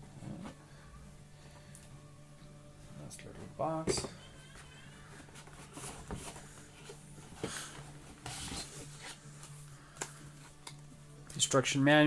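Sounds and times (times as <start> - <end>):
paper rustling: 5.0 - 10.7.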